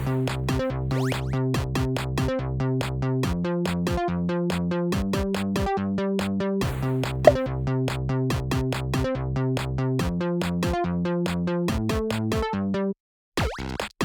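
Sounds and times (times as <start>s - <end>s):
electronic music with drum machine: 7.3s - 7.5s.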